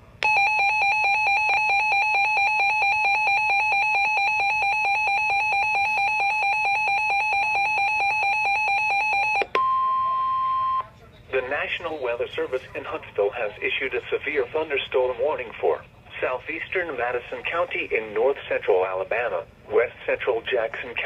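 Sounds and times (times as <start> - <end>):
pulsing electronic alarm beep: 0.2 - 10.8.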